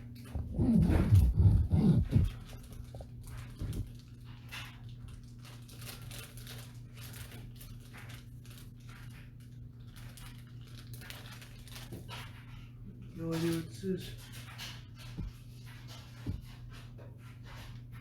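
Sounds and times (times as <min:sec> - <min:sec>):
low electrical hum: 0:00.0 - 0:18.0
packaging rustling: 0:00.3 - 0:04.2, 0:05.2 - 0:08.8.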